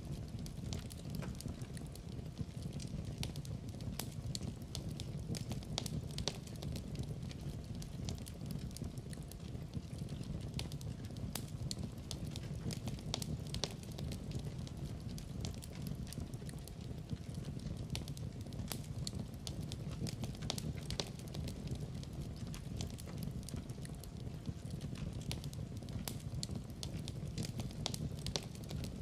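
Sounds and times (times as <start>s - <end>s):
wood fire crackling: 0.0s - 29.0s
sharp pops of burning wood: 0.1s - 29.0s.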